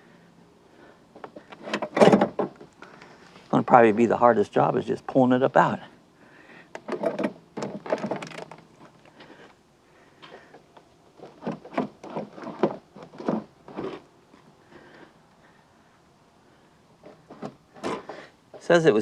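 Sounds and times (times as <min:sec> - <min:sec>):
car battery clunking and scraping: 0:01.1 - 0:03.0, 0:06.7 - 0:09.4, 0:10.2 - 0:14.1, 0:17.0 - 0:18.7.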